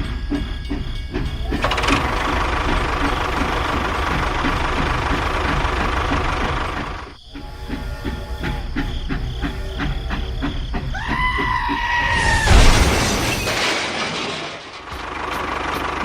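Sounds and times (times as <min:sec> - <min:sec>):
small engine knocking: 0:00.0 - 0:11.5, 0:14.8 - 0:16.0
loud grinding hiss: 0:01.4 - 0:11.0.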